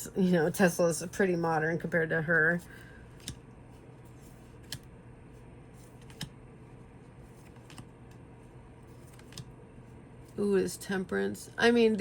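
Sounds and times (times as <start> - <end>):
faint room hum: 0.0 - 12.0
cards flipping clicks: 3.2 - 3.4, 4.5 - 4.9, 5.8 - 6.4, 7.3 - 8.2, 8.9 - 9.5.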